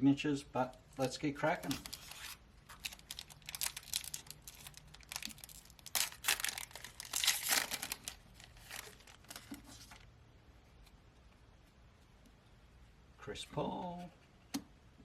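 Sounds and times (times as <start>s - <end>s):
wrapper tearing and crinkling: 1.6s - 10.0s.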